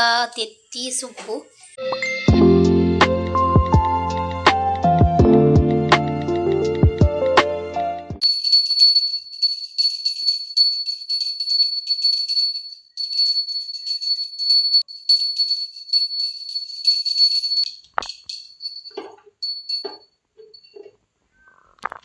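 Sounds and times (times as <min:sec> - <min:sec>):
jingle bells shaken: 0:08.2 - 0:20.9.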